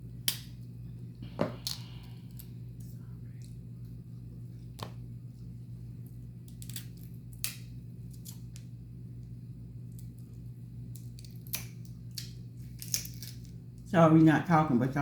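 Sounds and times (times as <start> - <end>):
low hum: 0.0 - 15.0
crab shells cracking: 6.4 - 8.7, 9.8 - 13.6.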